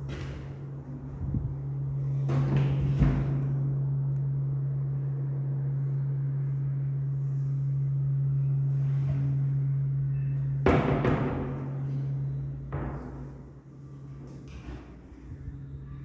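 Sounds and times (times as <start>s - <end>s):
low drone note: 3.4s - 14.3s.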